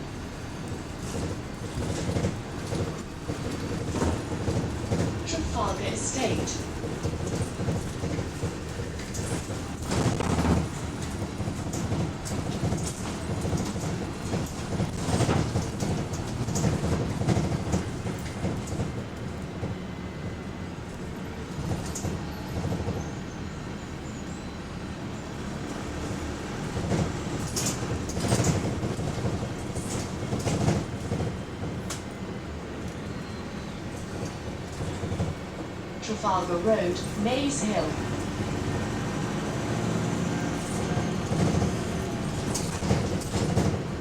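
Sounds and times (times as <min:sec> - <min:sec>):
bus engine running: 0:00.0 - 0:44.0
bodywork rattling and knocking: 0:01.0 - 0:05.3, 0:06.6 - 0:20.3, 0:26.6 - 0:32.2, 0:33.9 - 0:35.7, 0:40.1 - 0:44.0.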